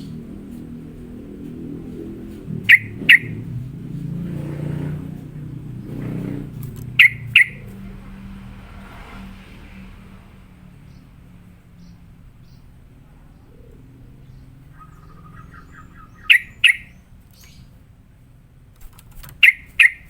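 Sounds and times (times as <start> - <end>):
steady low hum: 0.0 - 8.7
bulbul short sharp calls: 2.5 - 3.5, 6.2 - 7.9, 14.7 - 17.7, 19.3 - 20.0.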